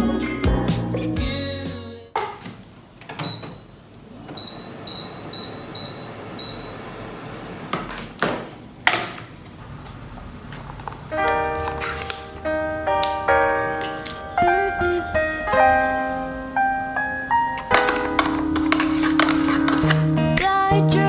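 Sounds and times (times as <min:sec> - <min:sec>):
sharp knocks and clicks: 0:07.7 - 0:09.3.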